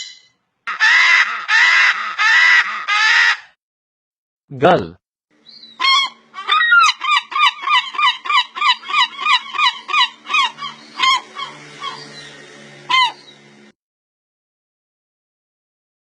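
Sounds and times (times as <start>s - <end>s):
gull calling: 5.7s - 12.2s, 12.9s - 13.4s.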